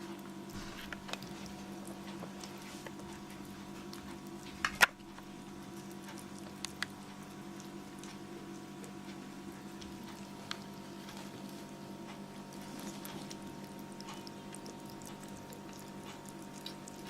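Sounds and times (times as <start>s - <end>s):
steady hum: 0.0s - 17.0s
kitten paws pattering: 0.1s - 17.0s.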